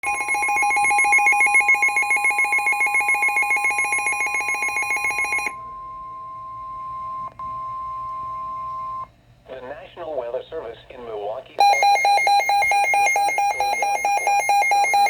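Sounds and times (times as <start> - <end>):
pulsing electronic alarm: 0.0 - 6.0, 11.6 - 15.0
steady alarm tone: 0.0 - 6.8, 11.6 - 15.0.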